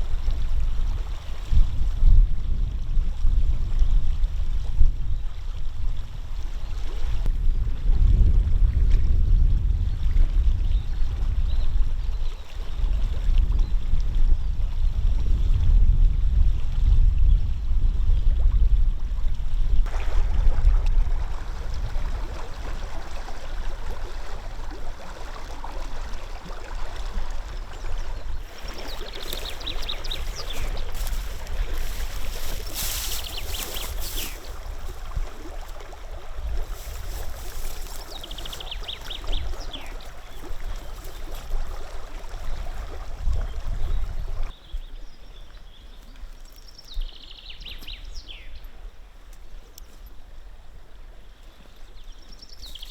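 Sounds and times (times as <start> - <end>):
river water flowing: 19.9 - 44.6.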